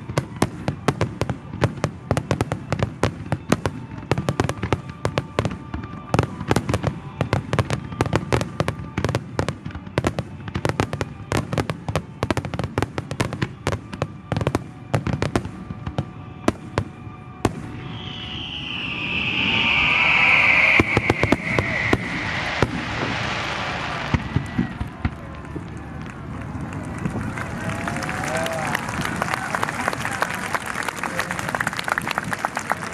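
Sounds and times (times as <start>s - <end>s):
fireworks crackling and banging: 0.0s - 32.9s
hiss with falling high tone: 17.8s - 24.8s.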